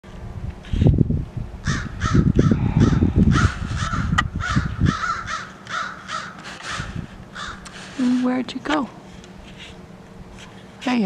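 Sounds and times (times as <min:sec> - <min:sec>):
low rumble: 0:00.1 - 0:05.4
crows cawing: 0:01.6 - 0:08.0.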